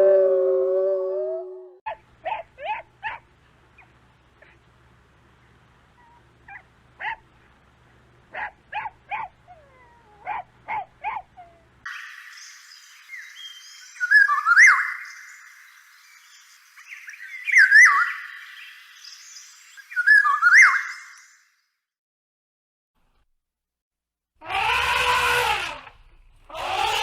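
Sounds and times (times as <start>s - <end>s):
dog-like animal yipping and barking: 1.9s - 3.9s, 6.0s - 7.2s, 8.3s - 11.6s
high chirping and whistled calls: 12.0s - 21.4s.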